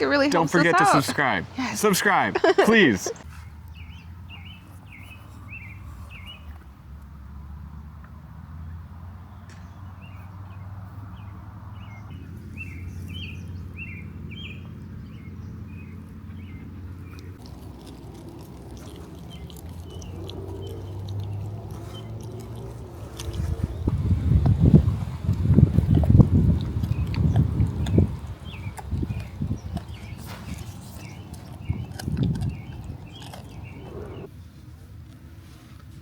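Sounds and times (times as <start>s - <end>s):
songbird chirping: 0.0s - 6.7s, 9.2s - 34.3s.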